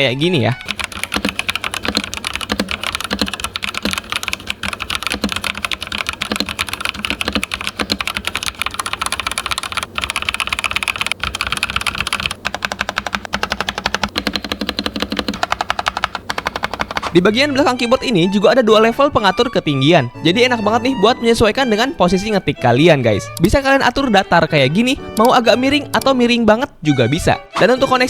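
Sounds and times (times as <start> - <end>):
mechanical keyboard typing: 0.6 - 17.2.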